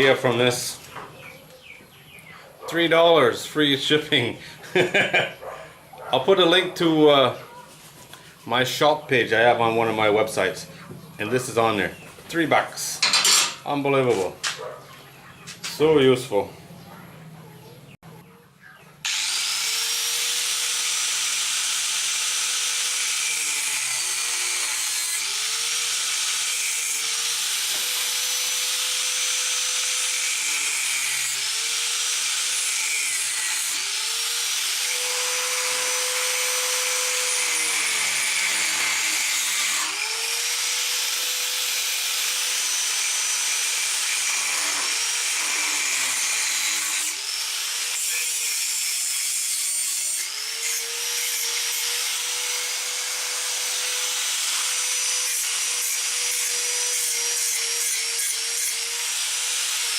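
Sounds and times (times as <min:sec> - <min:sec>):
power tool cutting steel: 0:13.0 - 0:14.2, 0:19.0 - 0:59.9.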